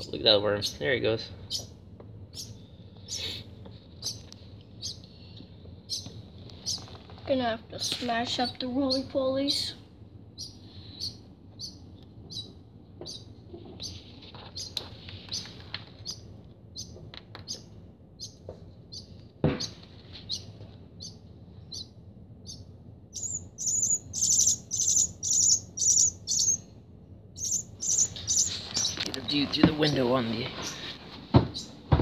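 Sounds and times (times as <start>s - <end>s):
bird nestling chirping: 0.0s - 3.4s, 4.0s - 5.1s, 5.8s - 6.9s, 10.3s - 26.7s, 27.3s - 30.9s.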